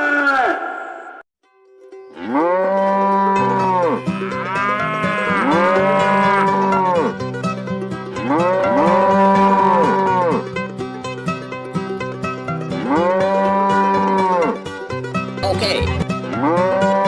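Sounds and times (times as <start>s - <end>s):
cattle mooing: 2.2s - 7.2s, 8.2s - 10.4s, 12.8s - 14.6s, 15.8s - 17.0s.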